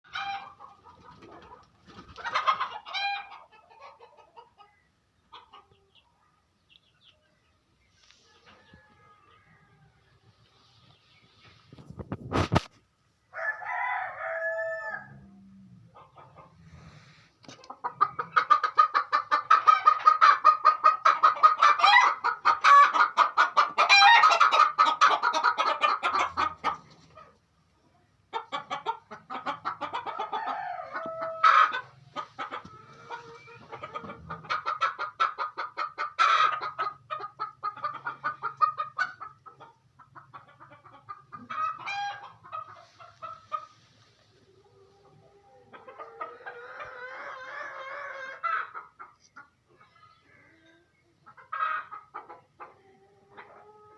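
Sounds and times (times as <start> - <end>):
hen cackling: 17.6 - 26.8, 28.3 - 43.8, 44.9 - 53.9.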